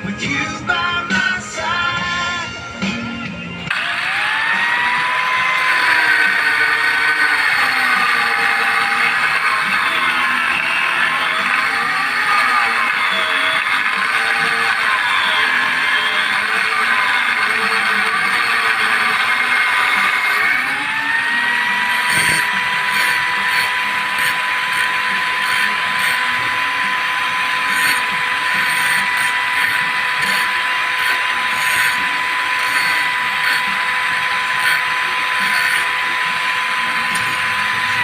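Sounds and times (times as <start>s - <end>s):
angle grinder whining: 2.8s - 38.0s.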